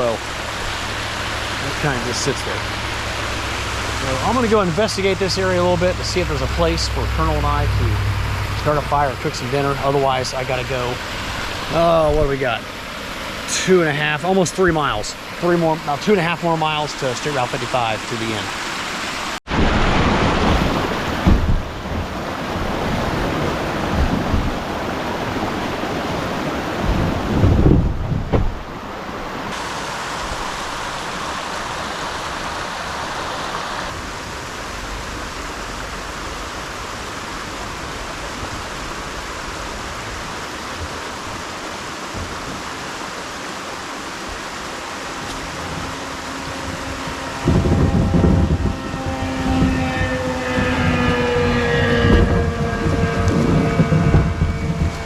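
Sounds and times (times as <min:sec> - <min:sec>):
wind rumbling on microphone: 0:00.0 - 0:12.4, 0:19.5 - 0:29.5, 0:44.3 - 0:55.0
river water rushing over dam: 0:00.0 - 0:50.8.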